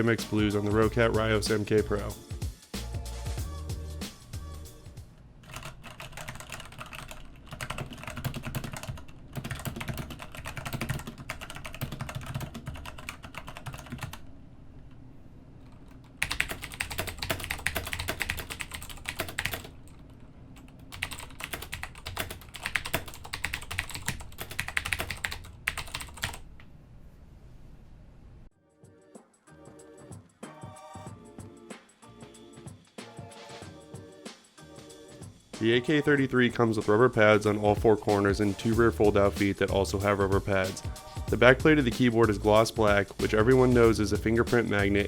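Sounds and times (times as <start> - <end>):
mechanical keyboard typing: 5.4 - 14.2, 15.8 - 26.4.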